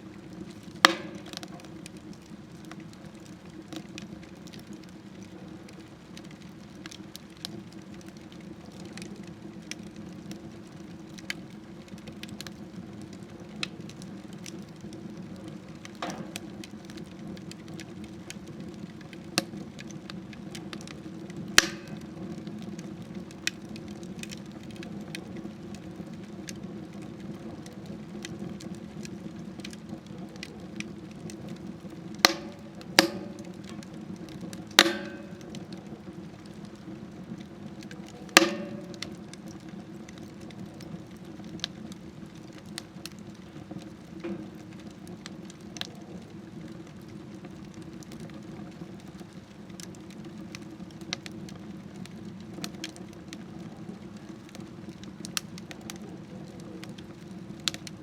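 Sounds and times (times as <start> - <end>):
fire crackling: 0.0 - 58.0
sharp pops of splitting wood: 0.7 - 2.0, 21.6 - 22.2, 32.2 - 35.8, 38.3 - 39.6.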